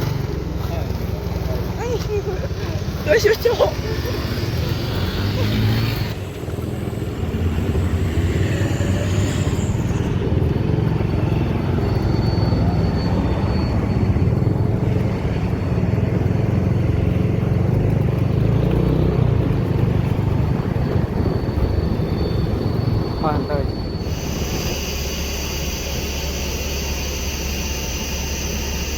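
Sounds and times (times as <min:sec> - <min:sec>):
large vehicle engine rumble: 0:00.0 - 0:28.9
road noise: 0:00.0 - 0:28.9.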